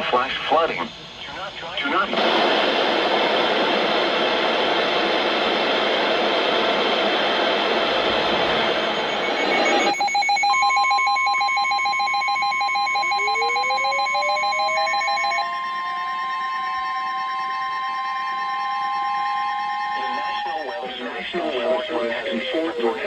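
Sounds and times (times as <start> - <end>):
radio static: 7.8 - 15.4, 20.0 - 23.0
rapidly pulsing tone: 8.4 - 23.0
steady alarm tone: 8.6 - 23.0
upward gliding tone: 9.0 - 23.0.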